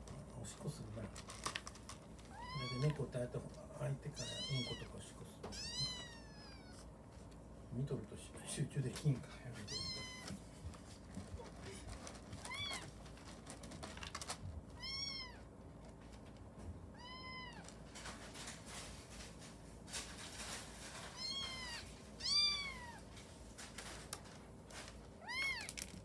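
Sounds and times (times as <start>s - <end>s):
kitten meowing: 2.3s - 3.0s, 4.1s - 6.9s, 9.6s - 10.4s, 12.4s - 12.9s, 14.8s - 15.5s, 16.9s - 17.7s, 21.1s - 23.1s, 25.2s - 25.8s.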